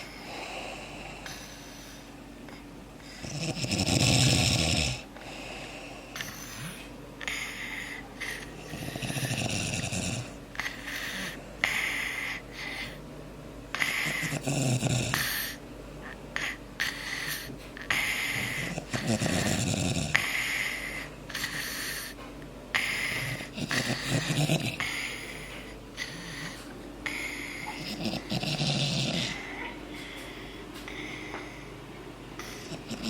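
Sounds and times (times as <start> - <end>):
man and toddler snoring: 3.1 - 13.0, 13.7 - 15.6, 16.4 - 22.2, 22.8 - 29.8, 32.4 - 33.0.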